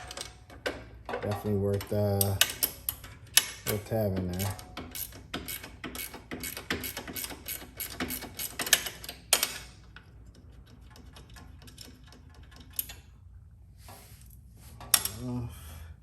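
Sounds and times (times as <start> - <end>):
socket ratchet clicking: 2.0 - 9.7.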